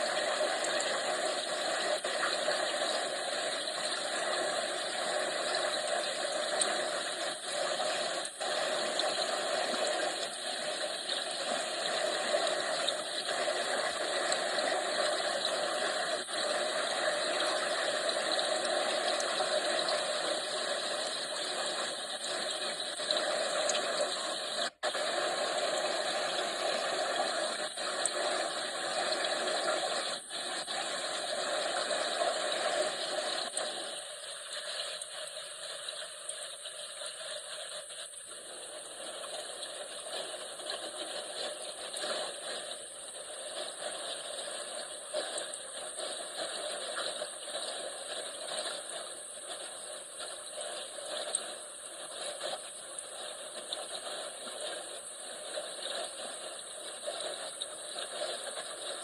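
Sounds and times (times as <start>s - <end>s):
aquarium water running: 0.0s - 59.0s.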